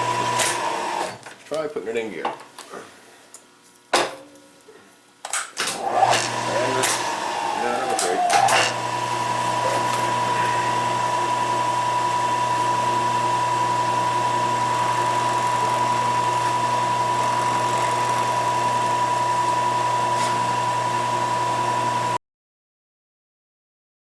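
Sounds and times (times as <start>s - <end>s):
milling machine cutting steel: 0.0s - 1.2s, 5.7s - 22.2s.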